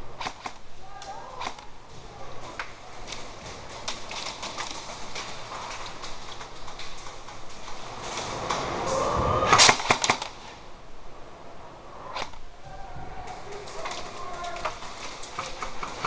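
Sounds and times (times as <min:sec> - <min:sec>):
airsoft guns firing: 0:00.0 - 0:07.6, 0:09.5 - 0:10.6.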